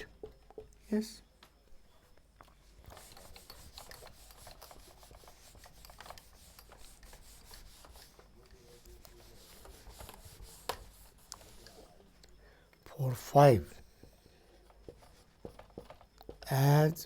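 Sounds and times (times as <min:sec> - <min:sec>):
scratchy handwriting strokes: 0:02.6 - 0:12.1.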